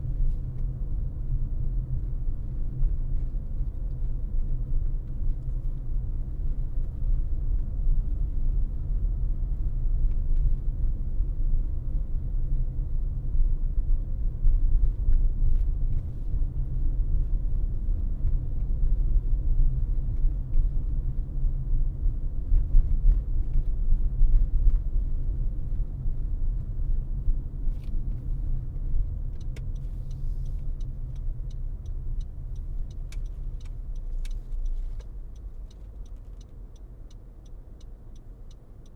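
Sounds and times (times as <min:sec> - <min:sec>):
car tyres and engine rumble: 0:00.0 - 0:38.9
regular ticking: 0:29.6 - 0:38.9.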